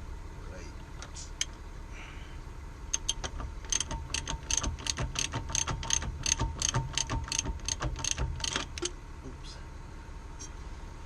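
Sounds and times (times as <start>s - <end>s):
ratchet wrench clicking: 2.9s - 8.9s.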